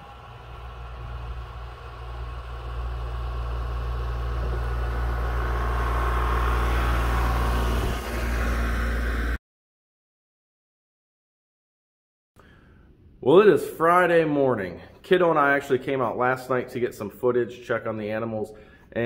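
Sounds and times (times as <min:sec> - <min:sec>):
engine humming: 0:00.0 - 0:09.4.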